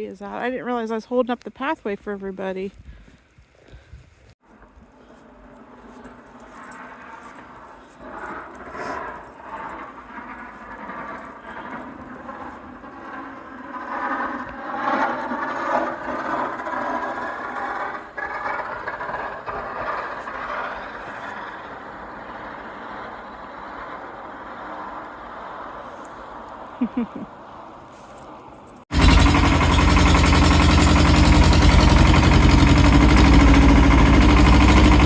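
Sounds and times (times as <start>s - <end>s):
tractor engine running: 16.0s - 23.1s, 28.9s - 35.0s.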